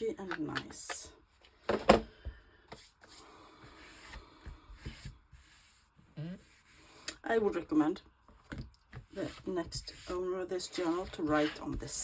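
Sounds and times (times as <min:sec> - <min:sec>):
soft rubbing: 0:09.0 - 0:12.0.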